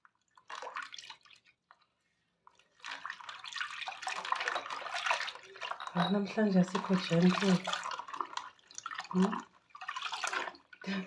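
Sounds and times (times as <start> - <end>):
water sloshing: 0.1 - 11.0
water splashing: 0.3 - 1.6, 2.5 - 11.0.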